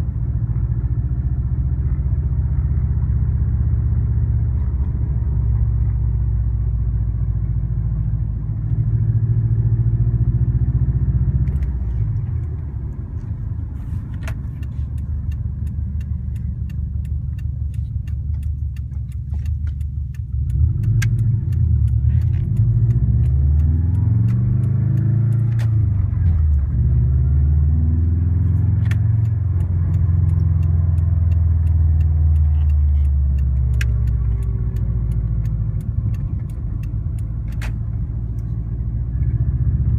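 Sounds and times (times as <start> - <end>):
car engine revving: 0.0 - 39.9
sharp ticks: 13.3 - 27.0, 28.0 - 39.4.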